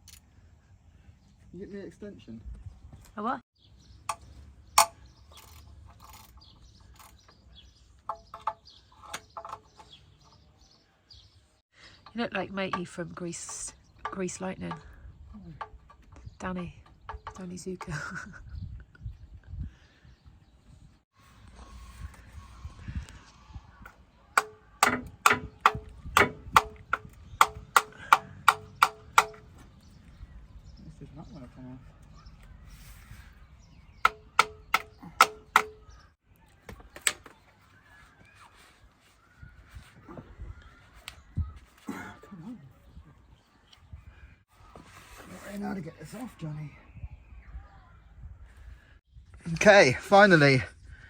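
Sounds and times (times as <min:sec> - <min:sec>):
hammer striking metal: 0:24.4 - 0:29.4, 0:34.0 - 0:35.8.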